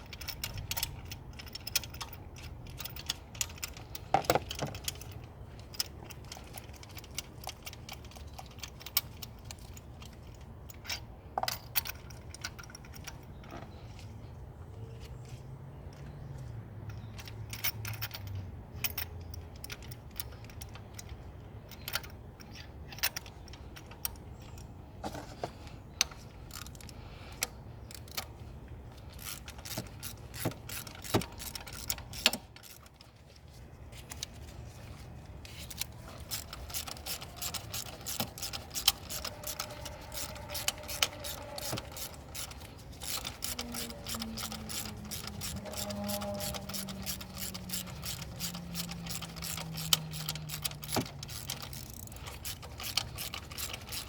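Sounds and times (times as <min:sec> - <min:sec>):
hand tools clicking and rattling: 0:00.0 - 0:14.3, 0:15.8 - 0:54.0
ratchet clicking: 0:26.0 - 0:33.2, 0:34.0 - 0:54.0.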